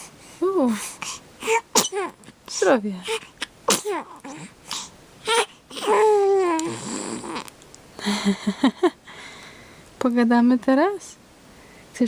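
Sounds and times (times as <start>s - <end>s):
baby cooing: 1.4s - 7.5s.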